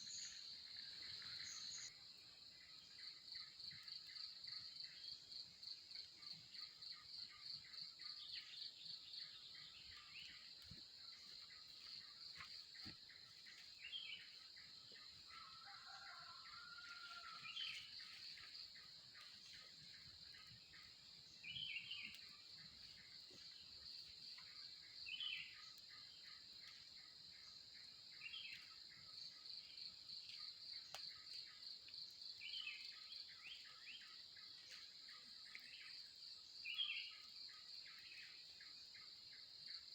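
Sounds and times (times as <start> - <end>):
insects trilling: 0.0 - 39.9
birds chirping: 16.7 - 23.9.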